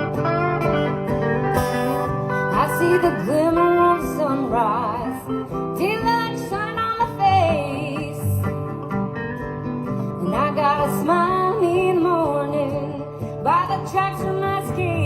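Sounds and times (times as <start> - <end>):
sliding lead melody: 0.0 - 6.5
country band playing: 0.0 - 15.0
guitar accompaniment: 0.0 - 15.0.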